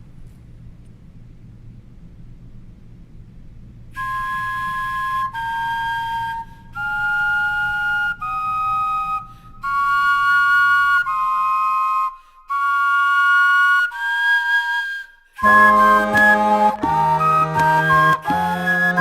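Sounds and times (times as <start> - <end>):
vegetable flute notes: 4.0 - 19.0.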